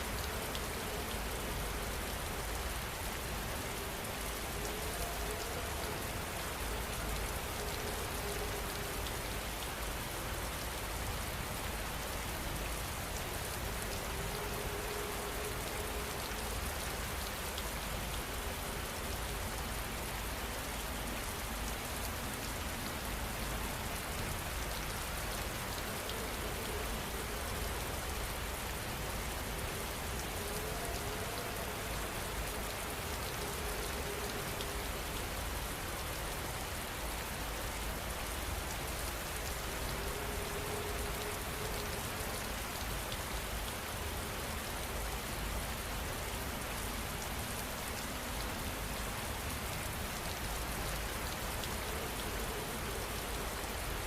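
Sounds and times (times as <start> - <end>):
rain falling steadily: 0.0 - 54.0.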